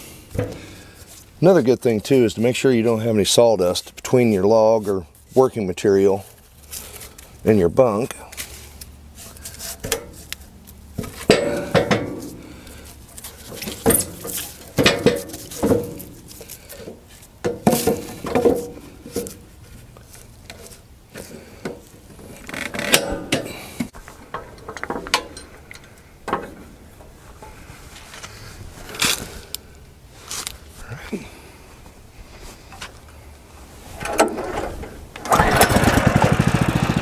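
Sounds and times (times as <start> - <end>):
metallic clanks on steel frame: 0.0 - 1.2, 9.2 - 10.4, 11.0 - 19.5, 20.5 - 29.3, 33.9 - 36.1.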